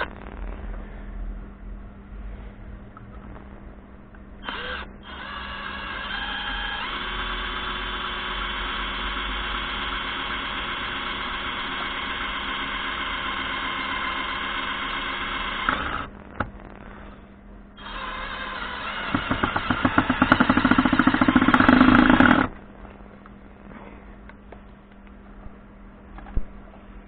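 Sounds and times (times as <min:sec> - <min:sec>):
cordless drill motor whining: 0:04.4 - 0:16.1, 0:17.8 - 0:22.5
drill click: 0:04.4 - 0:16.1, 0:17.8 - 0:22.6.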